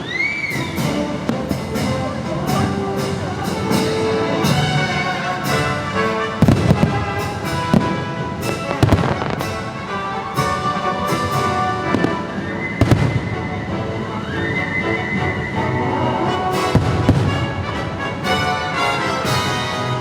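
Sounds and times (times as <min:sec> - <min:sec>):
fireworks bursting: 0:00.0 - 0:20.0
fireworks show music: 0:00.0 - 0:20.0.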